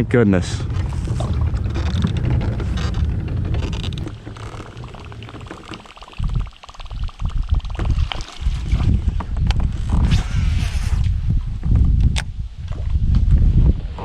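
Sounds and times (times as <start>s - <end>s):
low thumps: 0.0s - 8.0s
wind and water noise: 0.0s - 14.0s.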